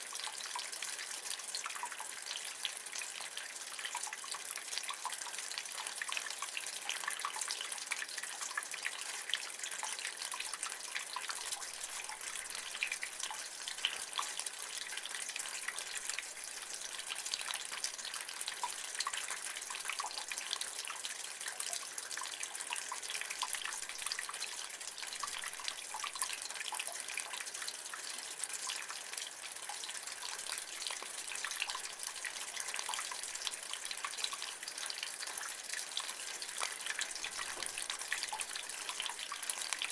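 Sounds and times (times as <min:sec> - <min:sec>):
rainwater dripping from gutter: 0:00.0 - 0:39.9.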